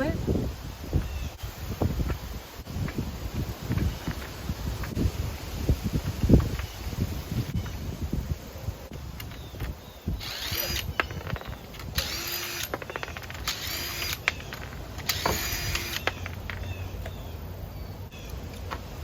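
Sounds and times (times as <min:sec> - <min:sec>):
impact wrench motor whine: 0:10.2 - 0:11.2, 0:11.9 - 0:16.2.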